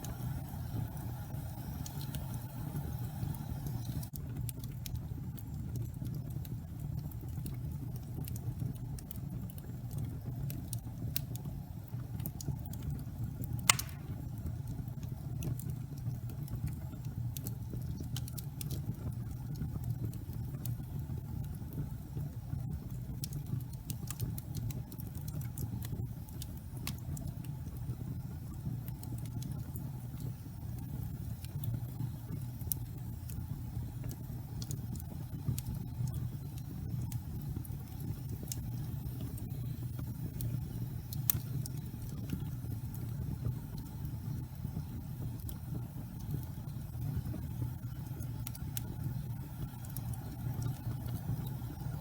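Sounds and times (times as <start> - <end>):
wood fire crackling: 0.0 - 52.0
loud fire pop: 13.7 - 14.4.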